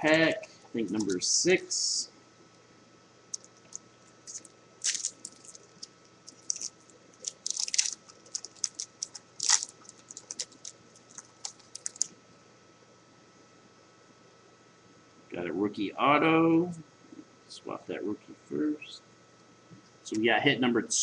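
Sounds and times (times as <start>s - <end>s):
wrapper crinkling and tearing: 3.4s - 12.1s.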